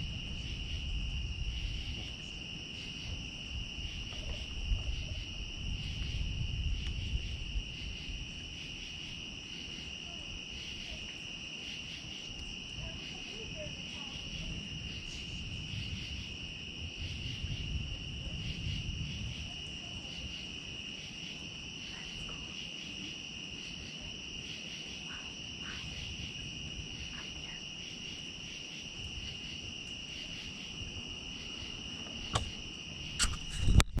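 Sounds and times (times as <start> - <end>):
night insects trilling: 0.0 - 34.0.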